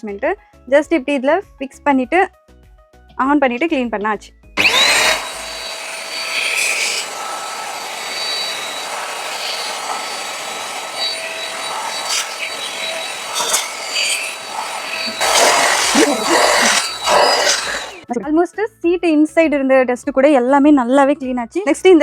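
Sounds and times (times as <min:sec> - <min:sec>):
handheld vacuum cleaner running: 0:04.6 - 0:18.1.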